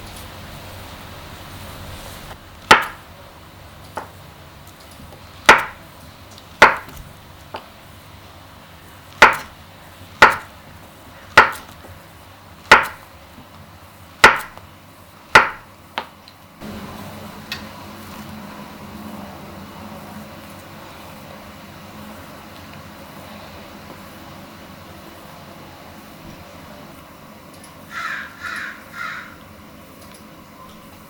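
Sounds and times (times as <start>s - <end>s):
knife chopping on cutting board: 2.7s - 3.0s, 5.4s - 5.8s, 6.6s - 7.0s, 9.2s - 9.5s, 10.2s - 10.5s, 11.3s - 11.8s, 12.7s - 13.0s, 14.2s - 14.6s, 15.4s - 15.7s.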